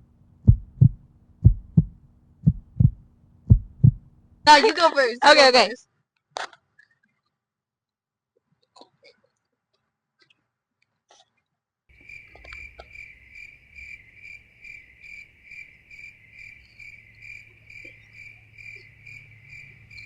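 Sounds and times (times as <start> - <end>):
low hum: 0.0 - 4.6
crickets chirping: 11.9 - 20.0
faint clicks: 12.0 - 13.0.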